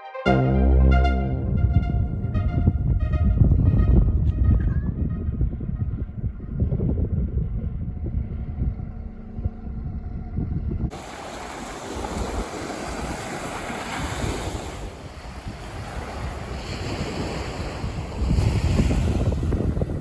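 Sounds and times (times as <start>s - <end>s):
wind buffeting microphone: 1.6s - 20.0s
sea surf washing on shore: 10.9s - 19.7s.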